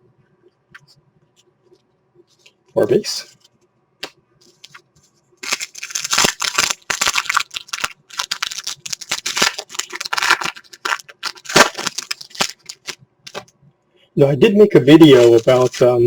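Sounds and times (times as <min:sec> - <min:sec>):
cards flipped by hand: 0:04.0 - 0:04.8, 0:15.0 - 0:15.9.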